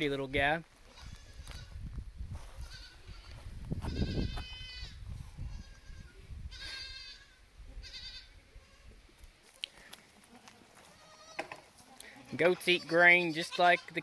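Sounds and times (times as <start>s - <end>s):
goats bleating: 5.6s - 9.0s, 10.2s - 14.0s.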